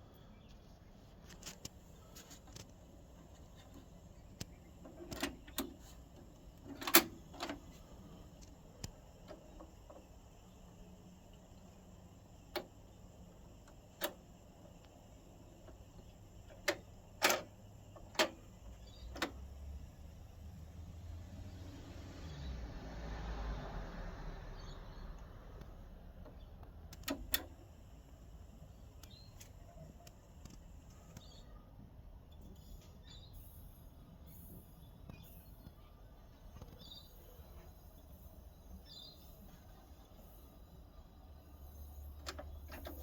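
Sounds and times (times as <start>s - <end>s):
faint steady hum: 0.0s - 23.0s
turntable mechanism clicking and clunking: 1.2s - 20.0s, 25.6s - 31.4s, 41.4s - 43.0s.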